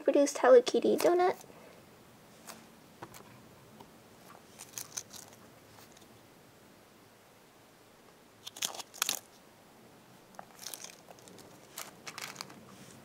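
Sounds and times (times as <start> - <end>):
foam toy squeezed crinkling rustles: 4.5 - 6.1, 8.4 - 9.3, 10.4 - 13.0.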